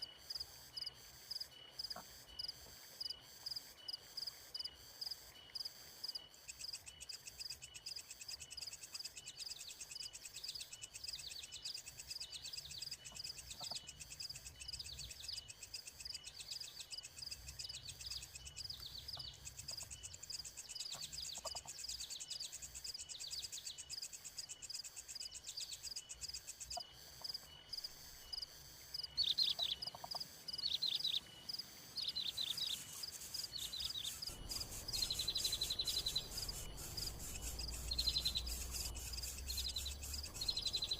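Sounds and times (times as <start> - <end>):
insects trilling: 0.0 - 40.9.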